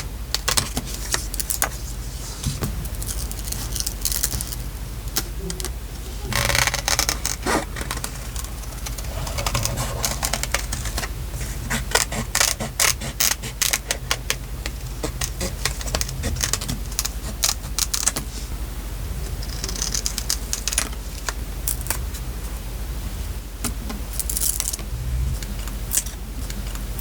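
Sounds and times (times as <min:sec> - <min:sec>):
low steady hum: 0:00.0 - 0:27.0
paper rustling: 0:00.7 - 0:05.3.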